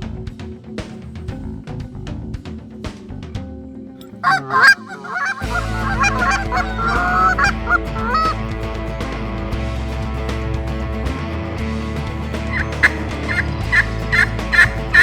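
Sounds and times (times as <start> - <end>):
background music: 0.0 - 15.0
large fowl calling: 4.2 - 8.4.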